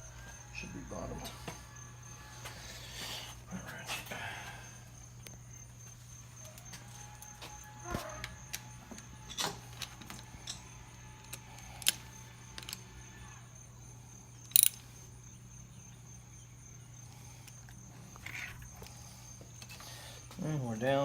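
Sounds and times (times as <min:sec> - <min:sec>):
ratchet clicking: 0:14.4 - 0:14.8.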